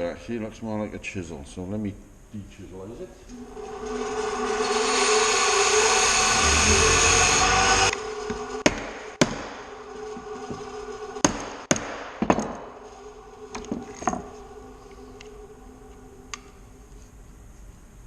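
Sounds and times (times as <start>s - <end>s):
power tool running: 3.3s - 15.6s.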